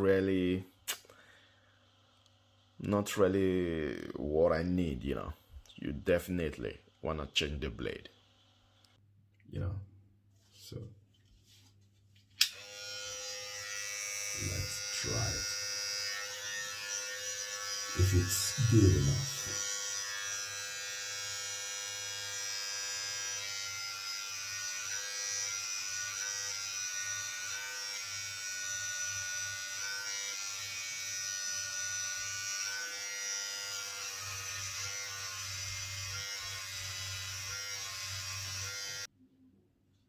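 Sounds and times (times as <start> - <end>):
hair trimmer buzzing: 12.4 - 39.1.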